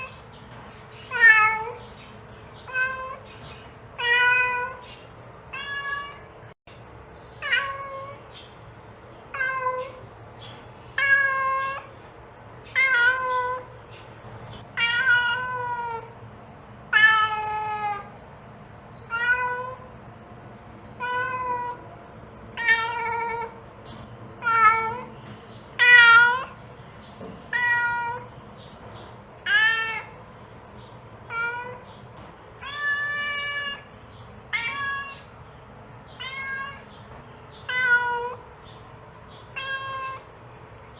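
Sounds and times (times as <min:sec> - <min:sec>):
cat meowing: 0:01.1 - 0:01.8, 0:02.6 - 0:03.3, 0:04.0 - 0:04.8, 0:05.5 - 0:06.4, 0:07.4 - 0:08.2, 0:09.3 - 0:10.0, 0:11.0 - 0:11.9, 0:12.7 - 0:13.7, 0:14.8 - 0:16.2, 0:16.9 - 0:18.2, 0:19.0 - 0:19.9, 0:20.8 - 0:21.8, 0:22.6 - 0:23.6, 0:24.4 - 0:25.1, 0:25.8 - 0:26.6, 0:27.5 - 0:28.3, 0:29.4 - 0:30.2, 0:31.3 - 0:31.9, 0:32.6 - 0:35.3, 0:36.0 - 0:37.0, 0:37.6 - 0:38.5, 0:39.4 - 0:40.3.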